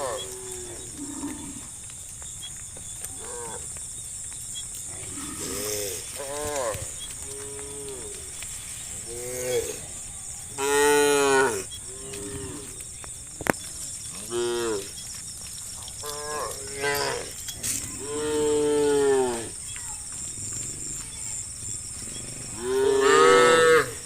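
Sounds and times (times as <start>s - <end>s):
cattle mooing: 22.2s - 24.0s.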